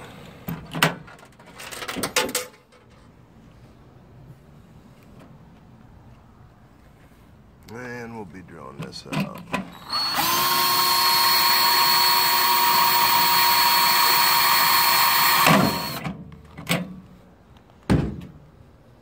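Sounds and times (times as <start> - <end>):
power drill whining: 9.7 - 16.1.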